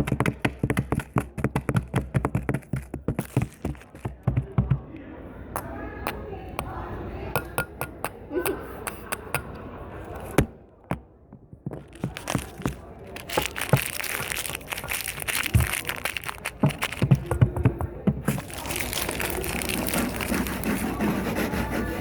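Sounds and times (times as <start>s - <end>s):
slime crackling and popping: 11.8s - 17.4s, 18.2s - 20.8s.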